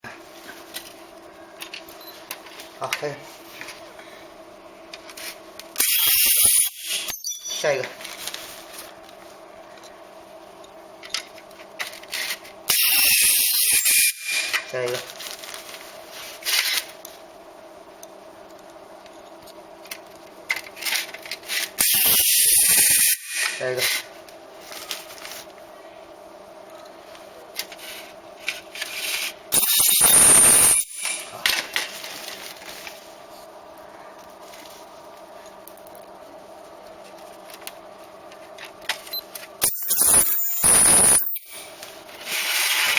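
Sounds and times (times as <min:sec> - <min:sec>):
ultrasonic welder hissing screech: 0:05.8 - 0:07.6, 0:12.7 - 0:14.6, 0:21.8 - 0:23.6, 0:29.5 - 0:31.3, 0:39.6 - 0:41.7
steady hum: 0:14.1 - 0:42.9.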